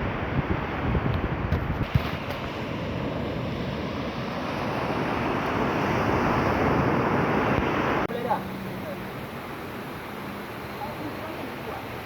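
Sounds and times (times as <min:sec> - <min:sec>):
wind buffeting microphone: 0:00.0 - 0:08.1
waterfall rushing: 0:02.5 - 0:12.0.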